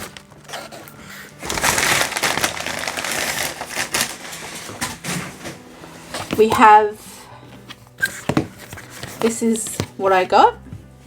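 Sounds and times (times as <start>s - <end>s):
packaging crinkling and rustling: 0.0s - 6.6s.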